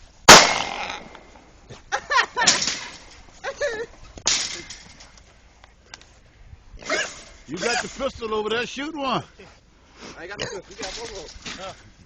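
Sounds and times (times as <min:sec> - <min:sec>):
gunshot: 0:00.3 - 0:01.1.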